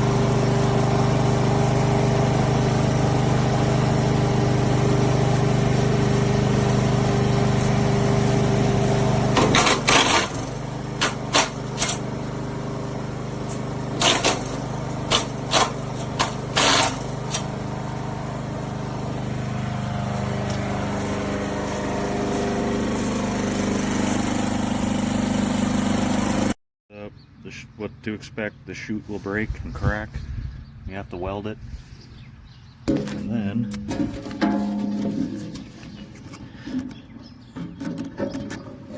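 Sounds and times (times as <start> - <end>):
wood chipper engine running: 0.0 - 26.6, 31.6 - 38.9
branches cracking in chipper: 32.9 - 36.7.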